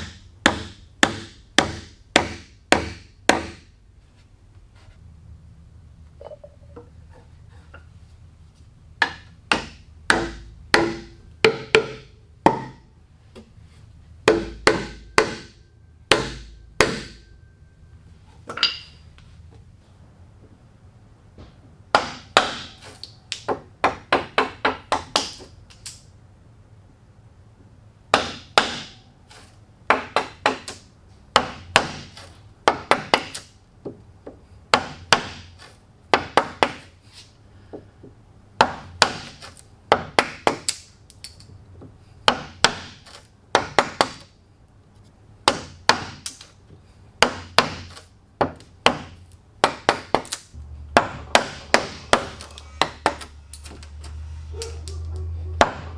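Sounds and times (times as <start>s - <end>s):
hand tools striking wood: 0.0s - 3.7s, 9.0s - 12.8s, 14.2s - 17.2s, 21.4s - 25.5s, 28.1s - 29.0s, 29.9s - 36.9s, 41.8s - 44.3s, 45.4s - 46.5s, 47.2s - 53.8s.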